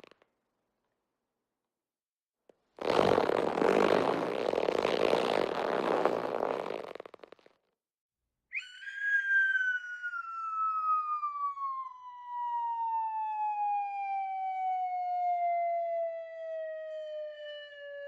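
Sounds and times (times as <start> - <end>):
falling whistle sound effect: 8.5 - 13.8.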